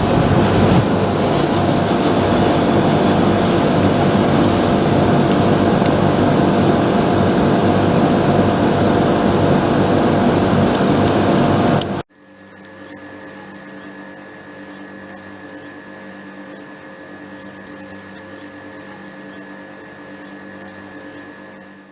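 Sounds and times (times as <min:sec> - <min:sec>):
air conditioner fan and compressor: 0:00.0 - 0:12.0
quiet hum with steady tones: 0:00.0 - 0:12.0.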